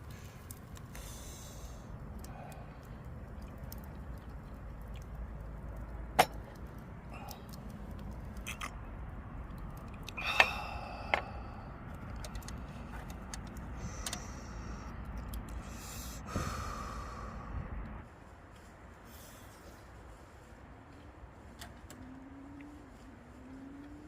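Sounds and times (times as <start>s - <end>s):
fire crackling and popping: 0.0s - 17.2s.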